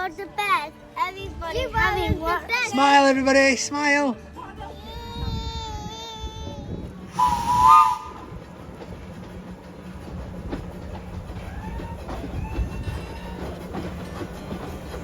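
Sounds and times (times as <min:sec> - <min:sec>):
train rumbling: 0:04.8 - 0:15.0
train whistle: 0:07.1 - 0:08.4.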